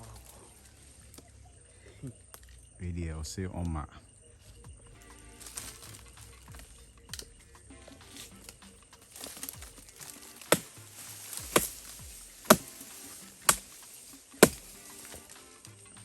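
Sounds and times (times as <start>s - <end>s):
blade chopping into fruit bunch: 10.4s - 15.3s.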